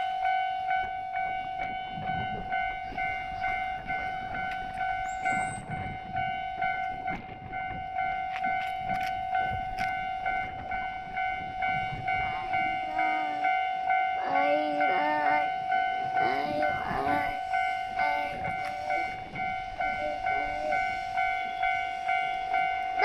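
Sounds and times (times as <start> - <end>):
level-crossing alarm clanging: 0.0 - 23.0
wavering voice: 14.2 - 21.3.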